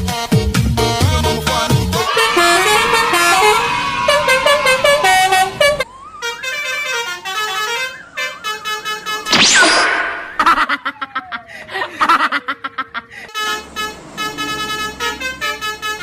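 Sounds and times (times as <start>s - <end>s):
multi-tone bus horn tune: 0.1s - 9.4s, 13.2s - 16.0s
sharply rising whistle: 7.9s - 11.2s.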